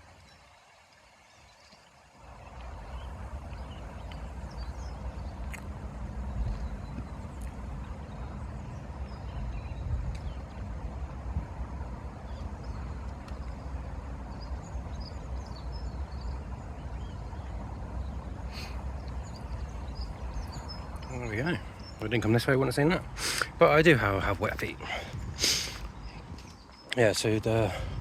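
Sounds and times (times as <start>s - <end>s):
small birds chirping: 0.0s - 28.0s
low outdoor rumble: 2.2s - 28.0s.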